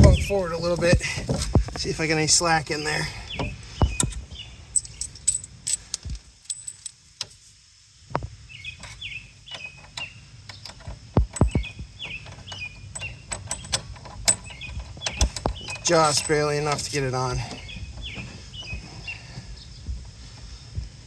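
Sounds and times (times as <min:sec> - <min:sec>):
bird chirping: 0:01.9 - 0:05.4, 0:08.5 - 0:20.6
metal hardware clinking: 0:03.4 - 0:07.4, 0:08.8 - 0:18.3.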